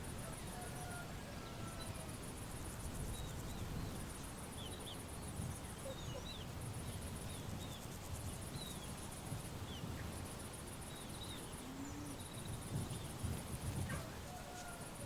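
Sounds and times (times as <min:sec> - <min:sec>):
small birds chirping: 0:03.1 - 0:07.9.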